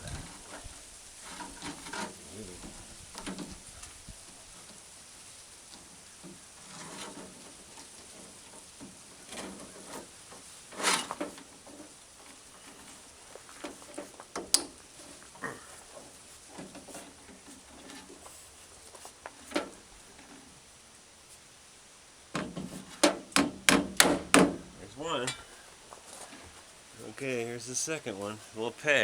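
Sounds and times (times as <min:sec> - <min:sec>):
rubbing and scraping: 0:00.0 - 0:21.5, 0:22.4 - 0:29.0.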